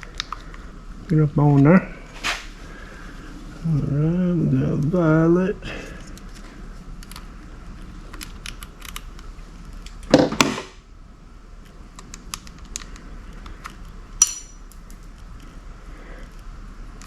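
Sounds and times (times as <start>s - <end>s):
small clicks and handling noises: 0.0s - 0.6s, 6.0s - 10.2s, 11.6s - 14.0s
metallic clink: 14.2s - 14.6s.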